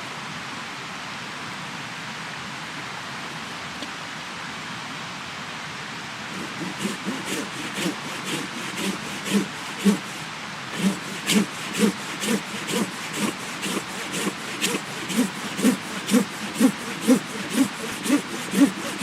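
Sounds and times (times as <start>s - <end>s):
hand saw cutting wood: 6.3s - 19.0s.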